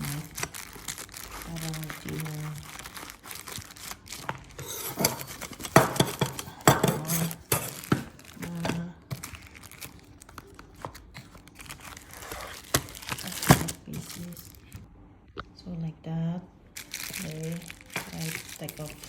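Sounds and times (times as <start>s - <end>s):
plastic wrappers crinkling and tearing: 0.0s - 14.9s, 16.8s - 19.0s
metal knives clinking: 4.8s - 7.8s.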